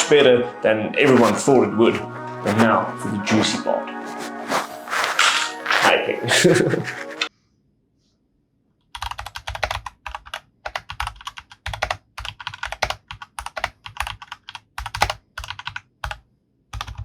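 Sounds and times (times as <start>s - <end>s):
mechanical keyboard typing: 9.0s - 16.2s, 16.8s - 17.0s.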